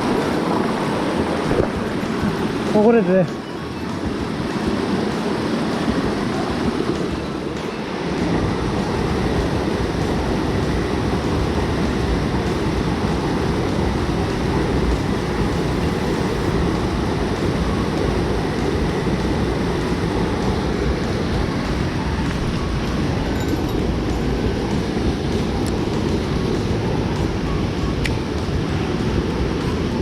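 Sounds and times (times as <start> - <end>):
stream water rushing over rocks: 0.0 - 30.0.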